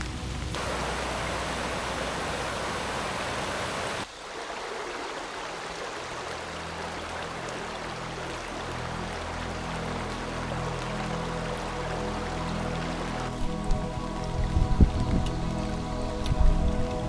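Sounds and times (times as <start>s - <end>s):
rushing water: 0.0s - 17.0s
low steady tones: 6.0s - 17.0s.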